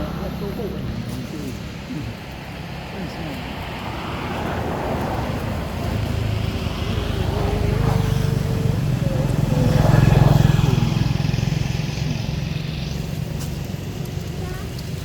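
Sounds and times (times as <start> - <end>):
vehicle engine passing by: 0.0 - 15.0.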